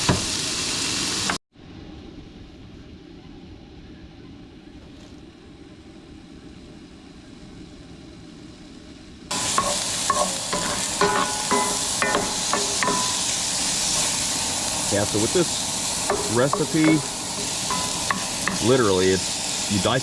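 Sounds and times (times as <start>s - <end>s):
chicken sizzling in a pan: 0.0s - 1.4s, 7.6s - 20.0s
low steady hiss: 1.6s - 20.0s.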